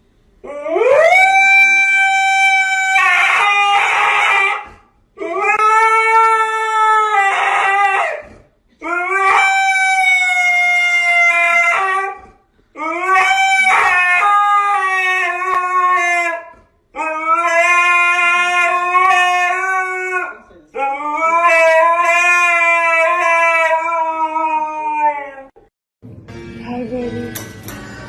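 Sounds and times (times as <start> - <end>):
dog howling: 0.4 - 25.6.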